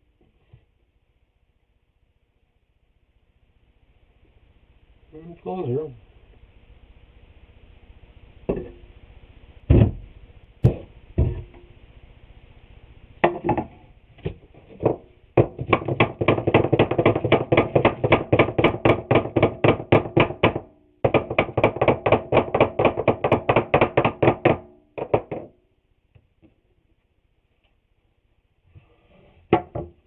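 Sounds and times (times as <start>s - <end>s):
knocks on wooden boards: 9.7s - 11.6s, 13.2s - 25.6s, 29.5s - 30.0s.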